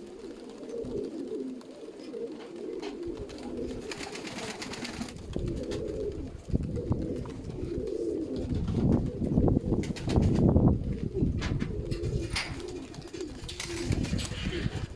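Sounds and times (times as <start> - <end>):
pigeons cooing: 0.0 - 14.9.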